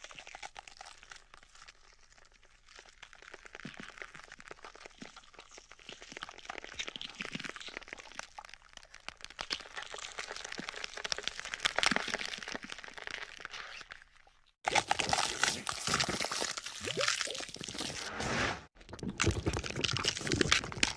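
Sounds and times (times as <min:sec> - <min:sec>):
wet spitting and sputtering: 0:18.8 - 0:20.9.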